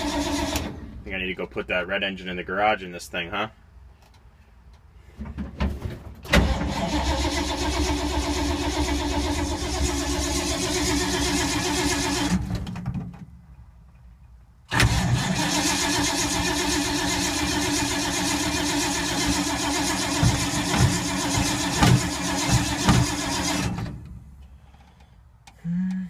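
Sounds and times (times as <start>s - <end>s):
starter cranking engine: 0.0s - 0.7s, 6.4s - 12.5s, 14.7s - 24.0s.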